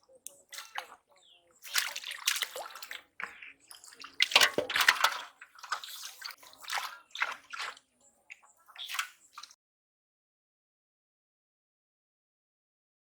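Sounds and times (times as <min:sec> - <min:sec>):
water sloshing and splashing: 0:00.0 - 0:09.6.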